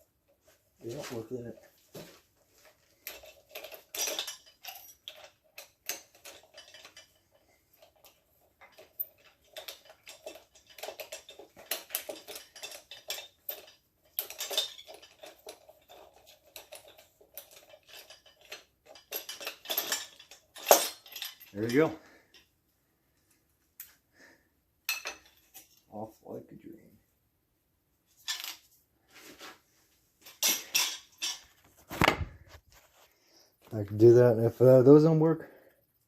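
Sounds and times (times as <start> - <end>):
metal tools clinking and rattling: 0.4 - 22.5, 24.9 - 26.1, 28.1 - 28.8, 30.2 - 33.0.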